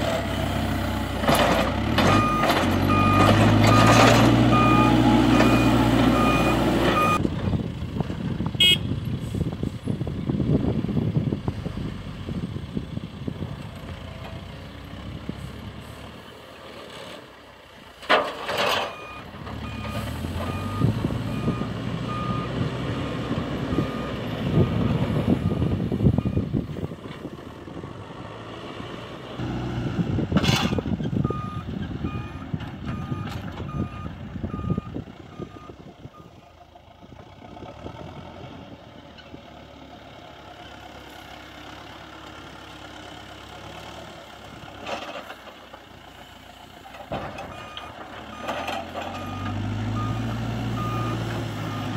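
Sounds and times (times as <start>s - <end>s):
diesel machinery engine: 0.0s - 51.9s
reversing alarm beeping: 2.1s - 7.2s, 18.9s - 22.6s, 31.2s - 36.3s, 47.5s - 51.9s.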